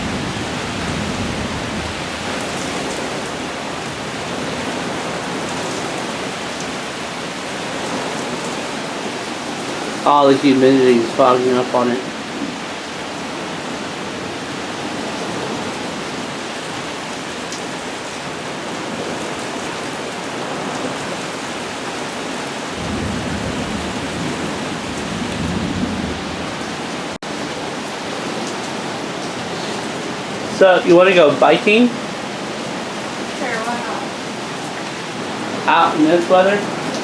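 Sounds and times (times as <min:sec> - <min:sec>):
low thunder rumble: 0:00.0 - 0:06.0, 0:22.8 - 0:27.2
heavy rain pouring: 0:00.0 - 0:37.0.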